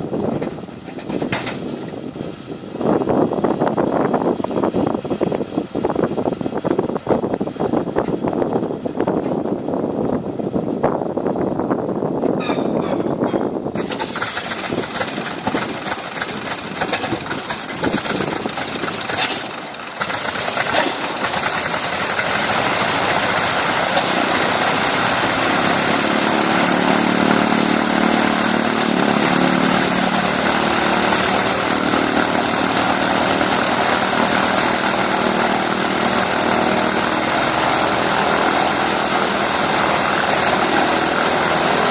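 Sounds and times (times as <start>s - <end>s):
radial engine starting and idling: 13.7s - 41.9s.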